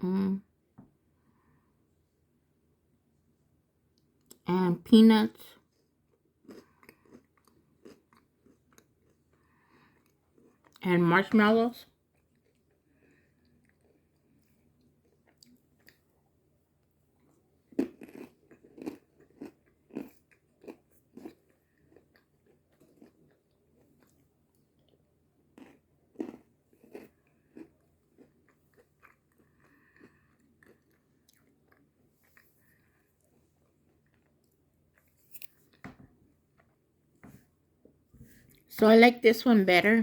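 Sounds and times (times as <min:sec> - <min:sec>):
crunchy chewing: 0:05.6 - 0:10.8, 0:12.0 - 0:16.1, 0:17.2 - 0:35.8.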